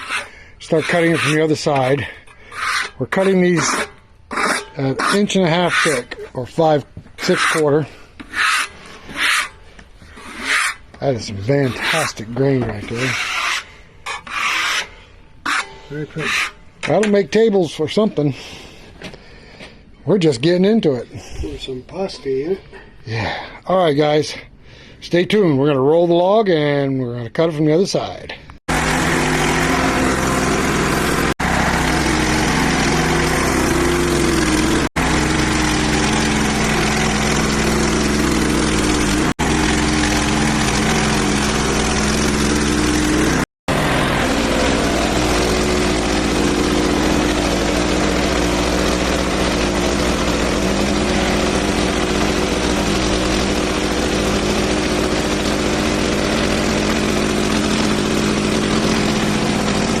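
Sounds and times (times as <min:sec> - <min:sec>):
gas engine running: 0:28.7 - 1:00.0.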